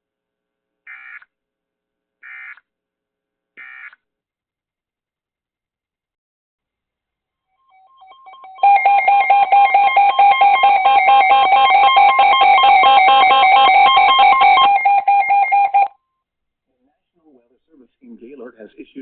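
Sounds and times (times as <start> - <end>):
electronic alert beeping: 7.8 - 15.9.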